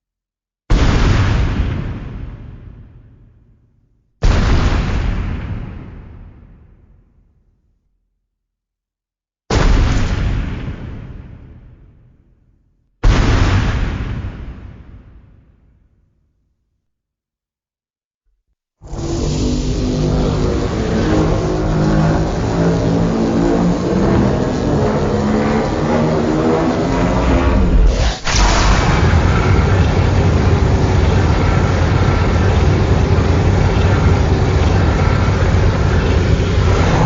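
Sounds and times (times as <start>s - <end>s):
pitched rumbling drone: 18.8s - 37.0s.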